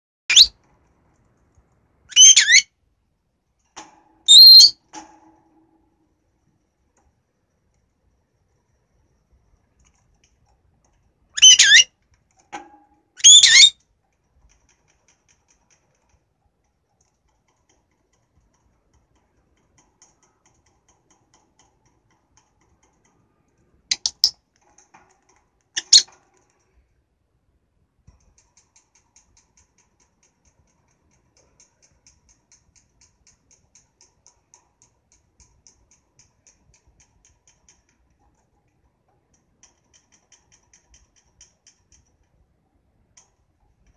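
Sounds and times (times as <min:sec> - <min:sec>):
lovebird squawking: 0:00.3 - 0:00.5, 0:02.1 - 0:02.6, 0:11.4 - 0:11.9, 0:13.2 - 0:13.7
faint rapid clicking: 0:04.8 - 0:13.1, 0:13.7 - 0:43.9.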